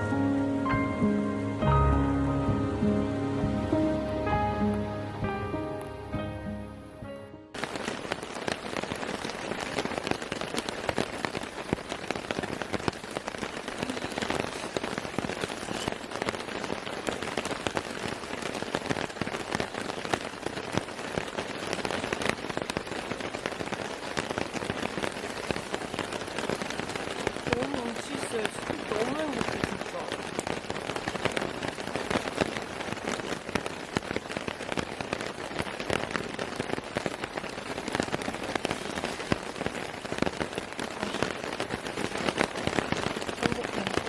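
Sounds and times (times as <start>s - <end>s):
short bit of music: 0.0s - 7.5s
rain drops striking a surface: 0.0s - 44.0s.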